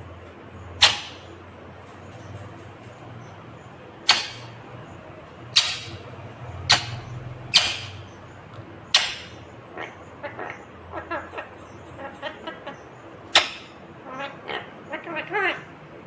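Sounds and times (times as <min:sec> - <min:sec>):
parakeet screeching: 0:00.8 - 0:01.3, 0:04.1 - 0:04.6, 0:05.6 - 0:06.0, 0:06.6 - 0:08.2, 0:09.0 - 0:15.6.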